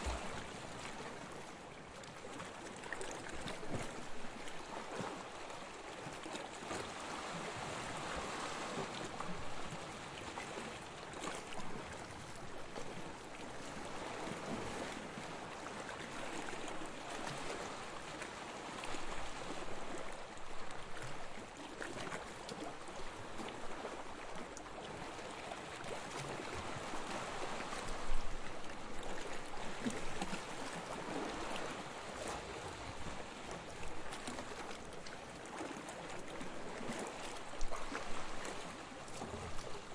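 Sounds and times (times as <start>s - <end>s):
sea waves washing onto beach: 0.0s - 1.3s.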